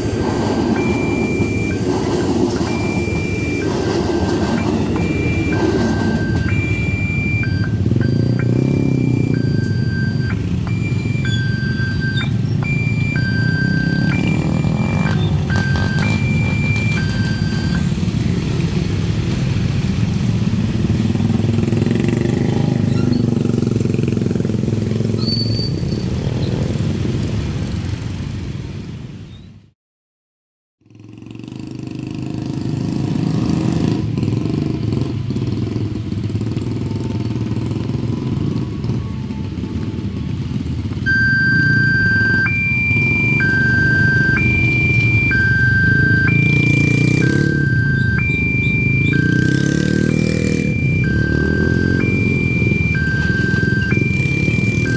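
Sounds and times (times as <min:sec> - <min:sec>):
two-tone crossing warning alarm: 0:00.0 - 0:18.1, 0:36.8 - 0:54.9
road traffic engines passing: 0:00.0 - 0:29.6, 0:30.8 - 0:54.9.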